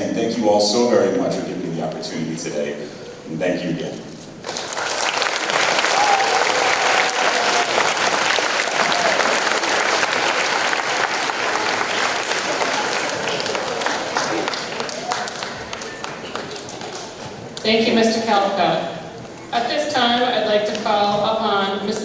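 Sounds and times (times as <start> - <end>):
large audience applauding: 4.4 - 17.4.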